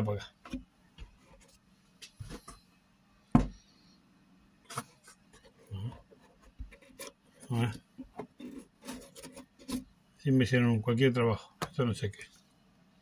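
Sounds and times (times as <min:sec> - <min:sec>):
knocks and taps of machine parts: 0:03.4 - 0:03.6.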